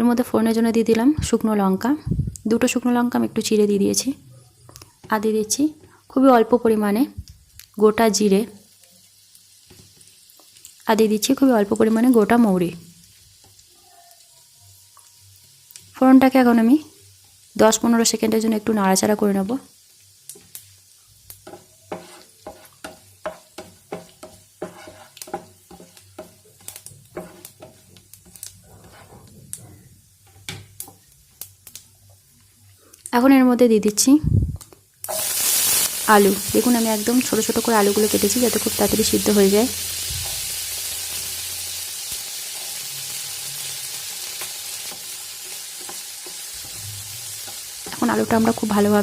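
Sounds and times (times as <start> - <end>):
spices sizzling in hot oil: 0.0 - 49.0
spatula striking and scraping pan: 21.4 - 29.4, 44.8 - 48.6.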